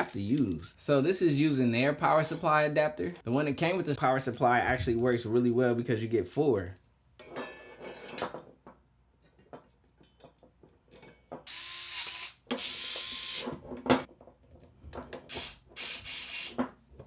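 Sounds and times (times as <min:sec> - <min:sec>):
electric screwdriver driving screws: 0:11.5 - 0:13.5, 0:15.3 - 0:16.6.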